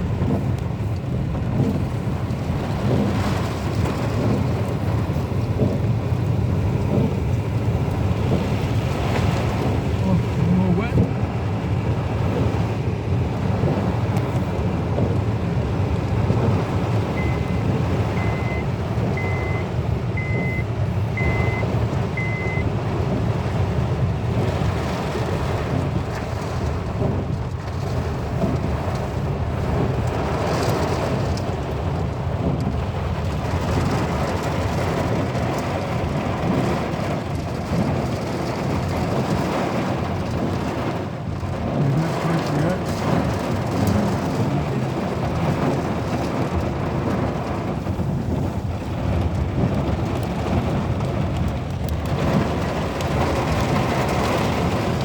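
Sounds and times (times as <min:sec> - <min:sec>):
heavy rain: 0:00.0 - 0:55.0
storm wind: 0:00.0 - 0:55.0
wind rumble on microphone: 0:00.0 - 0:55.0
short electronic beeps: 0:17.2 - 0:17.6, 0:18.2 - 0:22.7.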